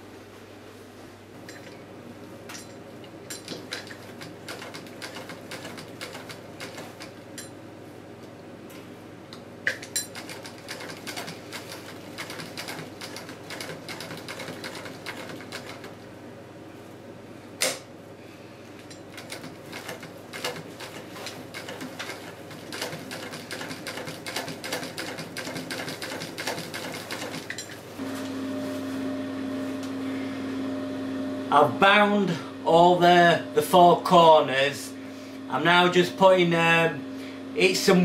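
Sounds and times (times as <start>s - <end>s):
sewing machine stitching: 10.2s - 15.9s, 19.2s - 27.5s
steady hum: 27.5s - 38.0s.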